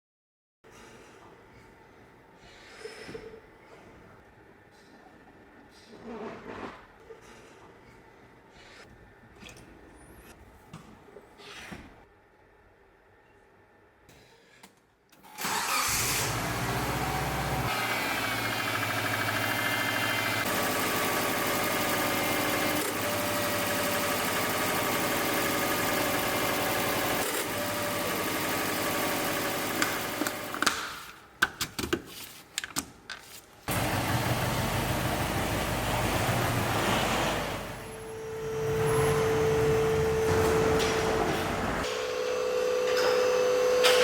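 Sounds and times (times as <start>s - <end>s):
car engine starting and idling: 15.3s - 30.6s, 33.7s - 41.9s.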